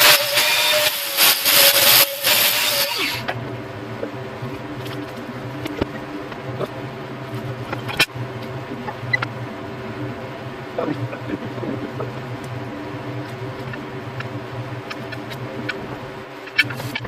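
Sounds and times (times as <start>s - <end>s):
power tool whining: 0.0s - 3.4s
low steady hum: 2.1s - 17.0s.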